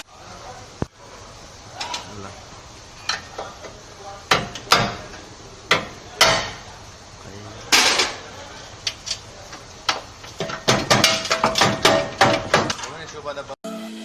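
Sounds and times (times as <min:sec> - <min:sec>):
hammer knocking on sheet metal: 0:10.4 - 0:12.8.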